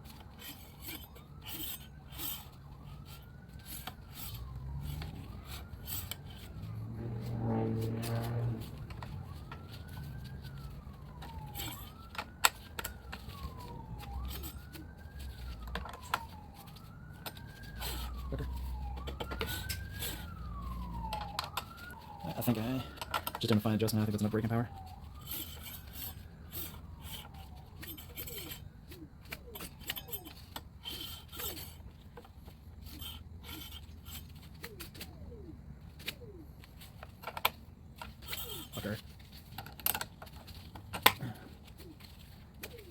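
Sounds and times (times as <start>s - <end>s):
wailing siren: 0.0s - 42.9s
tool clicks and scrapes: 0.1s - 18.1s, 25.1s - 35.2s.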